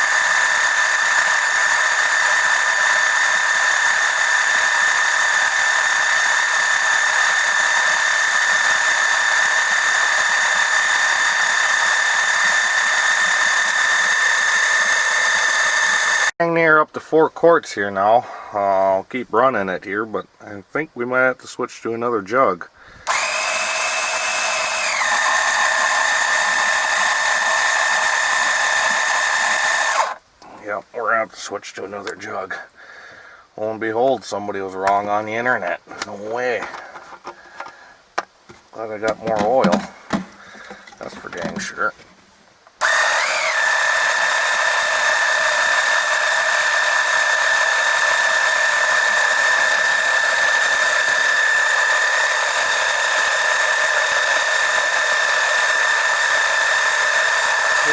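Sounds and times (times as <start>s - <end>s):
oil extraction pump whining: 0.0s - 16.4s, 22.8s - 30.6s, 35.9s - 41.9s, 42.7s - 57.9s.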